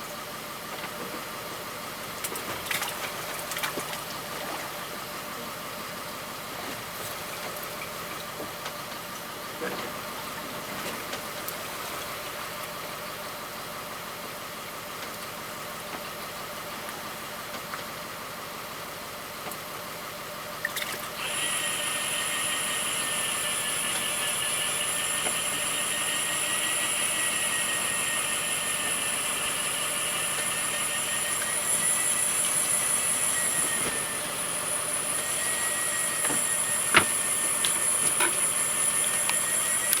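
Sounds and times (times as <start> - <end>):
boat engine running: 21.1 - 40.0
high-pitched whine with hiss: 21.2 - 40.0.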